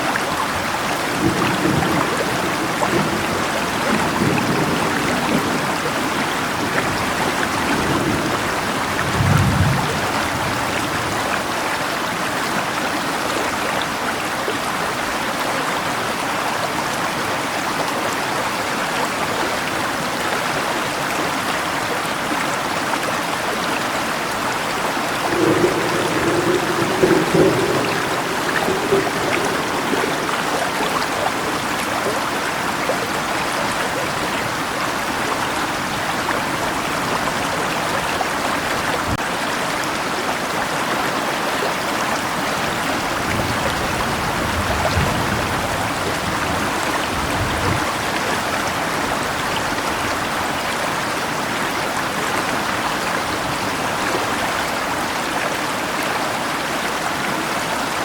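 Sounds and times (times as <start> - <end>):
rain: 0.0 - 58.0
river water rushing: 9.9 - 58.0.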